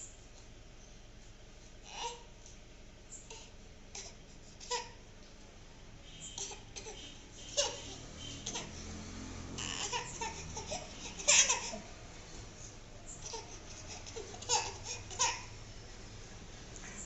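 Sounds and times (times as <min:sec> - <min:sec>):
small child laughing and babbling: 0:06.4 - 0:08.8, 0:09.6 - 0:12.0, 0:13.2 - 0:15.5.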